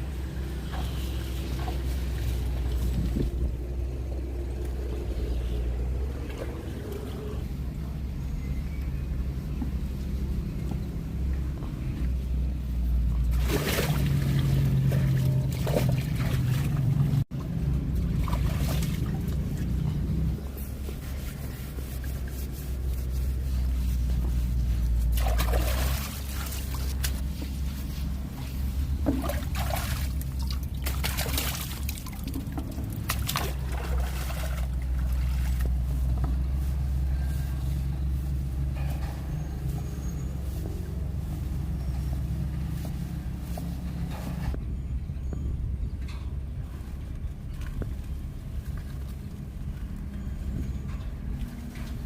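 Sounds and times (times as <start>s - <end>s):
boat engine humming: 0.0s - 52.0s
water splashing and pouring: 13.2s - 19.8s, 25.0s - 27.5s, 28.9s - 35.9s.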